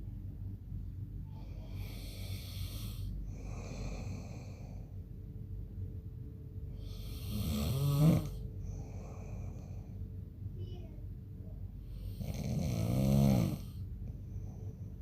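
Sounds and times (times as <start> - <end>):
man snoring: 1.7 - 4.7, 6.8 - 8.4, 12.0 - 13.8.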